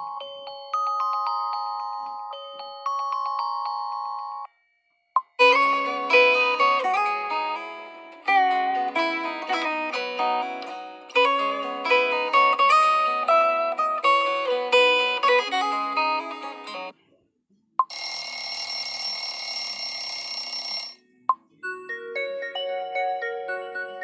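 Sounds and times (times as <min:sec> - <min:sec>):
phone ringtone plucked melody: 0:00.0 - 0:04.5, 0:17.9 - 0:21.0.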